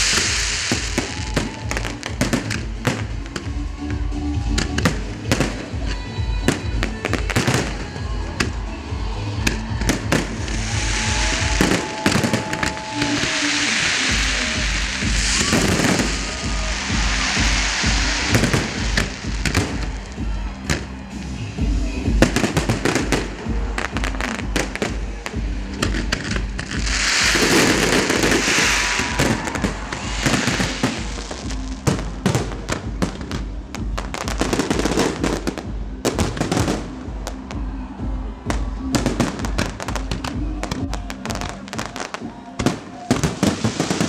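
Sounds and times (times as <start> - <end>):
hissing crackling firework burst: 0.0 - 3.6, 9.4 - 21.4, 22.2 - 35.4, 42.6 - 44.0
fireworks bangs and crackling: 0.0 - 44.0
music with a steady beat: 0.0 - 44.0.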